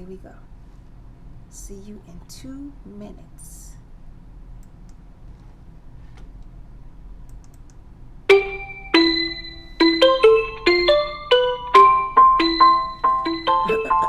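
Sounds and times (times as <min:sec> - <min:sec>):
bright ringing melody: 0:08.3 - 0:14.0.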